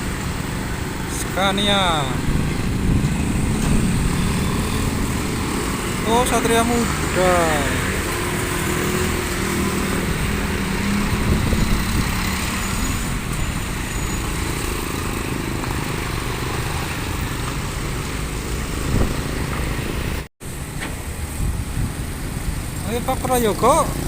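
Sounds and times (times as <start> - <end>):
diesel vehicle passing: 0.0 - 24.0
traffic noise: 0.0 - 24.0.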